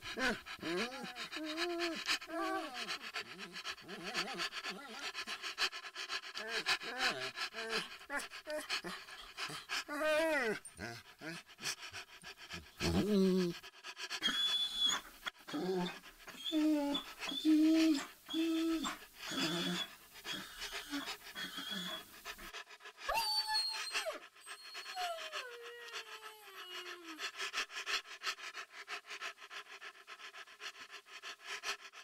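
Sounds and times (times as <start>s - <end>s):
dog whining: 0.0s - 5.3s, 6.4s - 11.4s, 14.2s - 22.2s, 23.1s - 27.3s
dog panting: 0.0s - 32.0s.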